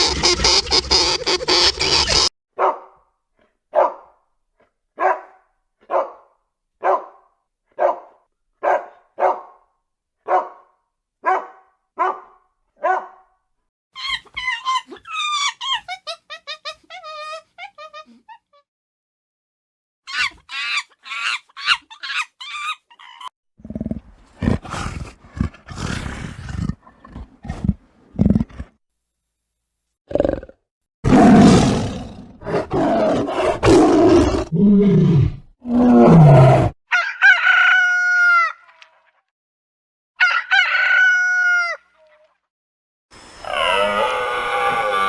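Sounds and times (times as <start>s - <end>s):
large animal roaring and growling: 30.1s - 36.8s, 43.4s - 45.0s
rooster crowing: 40.2s - 41.8s
high wavering animal calls: 43.2s - 45.0s.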